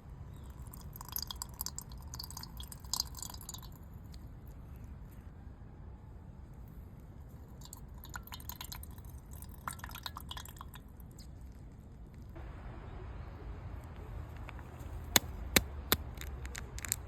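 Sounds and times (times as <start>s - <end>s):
water dripping: 0.3s - 4.3s, 7.4s - 11.4s.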